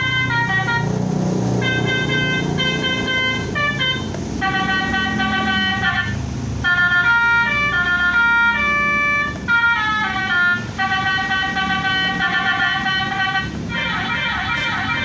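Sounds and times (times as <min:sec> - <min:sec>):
electronic horn playing a tune: 0:00.0 - 0:15.0.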